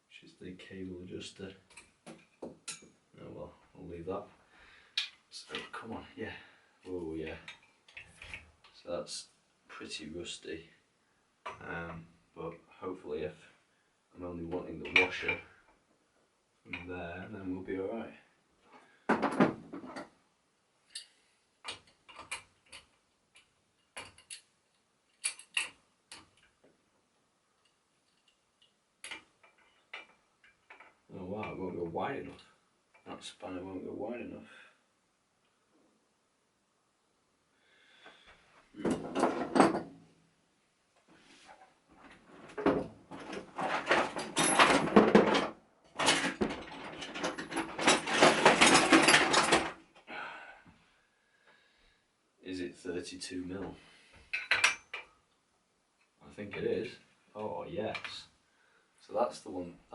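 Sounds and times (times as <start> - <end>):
spanner clinking on metal nut: 25.1 - 26.3
metal tools clattering in a drawer: 42.6 - 49.8.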